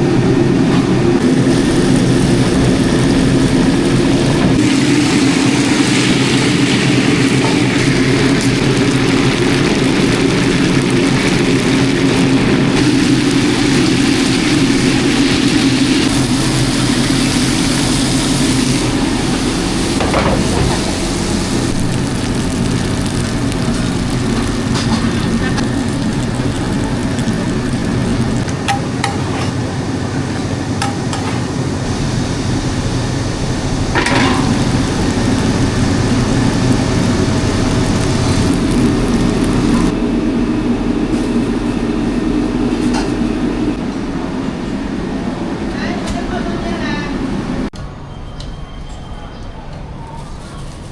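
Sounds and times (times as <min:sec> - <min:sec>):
dumplings sizzling in a pan: 0:01.2 - 0:40.0
utensils clinking: 0:28.5 - 0:29.6, 0:30.8 - 0:31.5.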